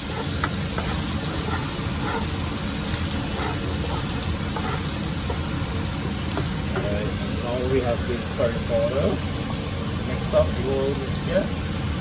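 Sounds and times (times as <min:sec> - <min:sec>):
vegetables sizzling in hot oil: 0:00.0 - 0:12.0.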